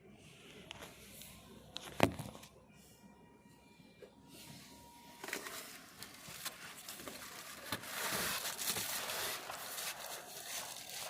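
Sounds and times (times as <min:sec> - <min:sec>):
rustling and crinkling: 0:04.4 - 0:11.0.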